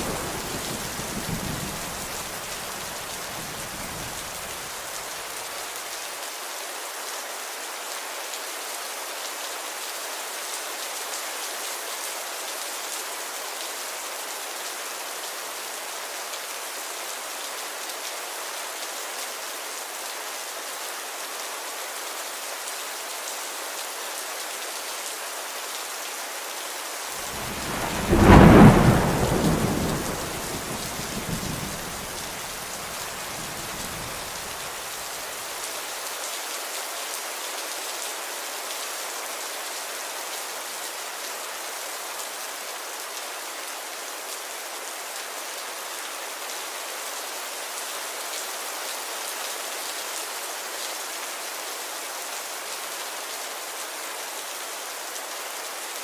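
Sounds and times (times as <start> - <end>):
steady rain falling: 0.0 - 56.0
thunder rumbling: 27.2 - 34.4.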